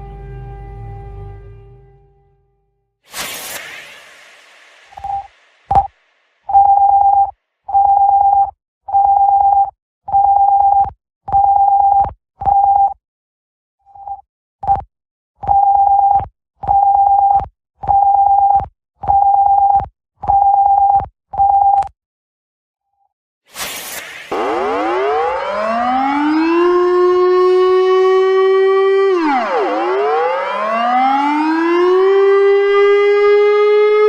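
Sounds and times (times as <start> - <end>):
short electronic blip: 3.1 - 7.0.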